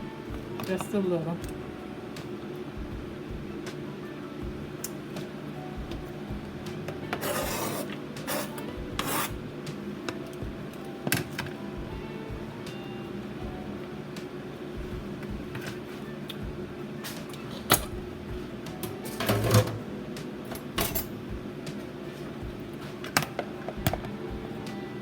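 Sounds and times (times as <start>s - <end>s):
utensils and containers clinking: 6.9s - 9.4s, 18.8s - 19.9s, 20.5s - 21.2s.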